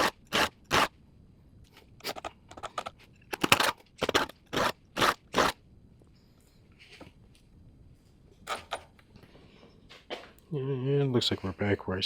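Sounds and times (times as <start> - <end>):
file scraping chainsaw chain: 0.0 - 0.9, 3.4 - 5.6.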